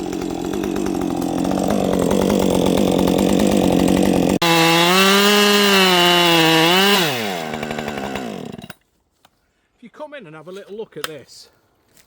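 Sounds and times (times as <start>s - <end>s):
chainsaw cutting and revving: 0.0s - 8.8s.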